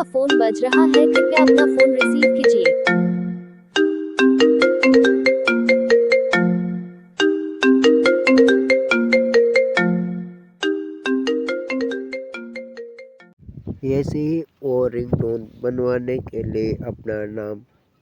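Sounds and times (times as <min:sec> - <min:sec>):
phone ringtone melody: 0:00.0 - 0:13.4.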